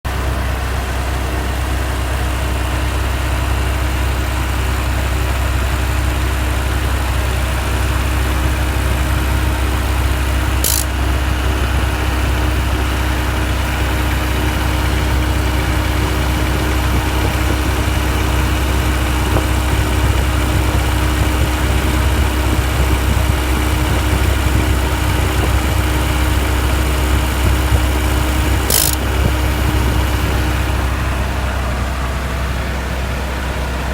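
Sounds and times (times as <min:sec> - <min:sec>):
car engine idling: 0:00.0 - 0:33.9
rapid compressor ticking: 0:00.1 - 0:33.9.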